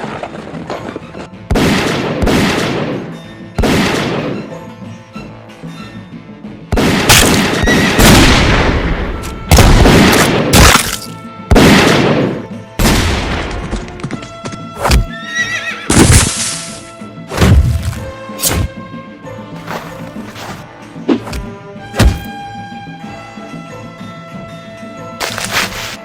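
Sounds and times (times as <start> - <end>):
music: 0.0 - 26.0
horse whinnying: 15.0 - 16.0.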